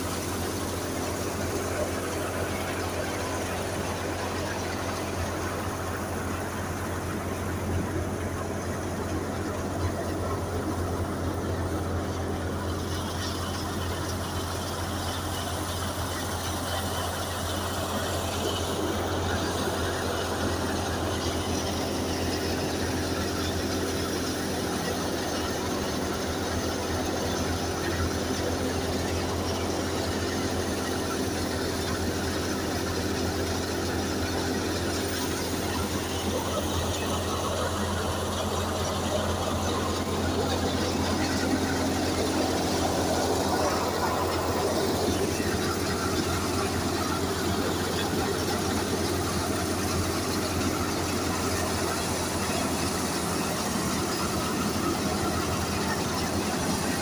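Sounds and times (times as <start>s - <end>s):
wheat thresher running: 0.0s - 57.0s.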